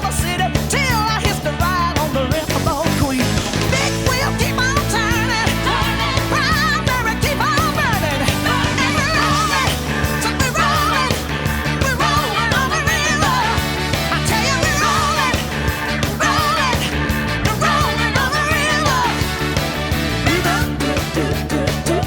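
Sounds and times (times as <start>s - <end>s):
rock song with vocals: 0.0s - 22.0s.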